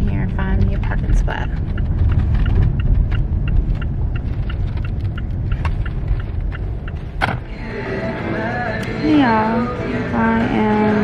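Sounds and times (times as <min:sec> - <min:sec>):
turn signal ticking: 0:00.0 - 0:07.5
road and engine rumble: 0:00.0 - 0:11.0.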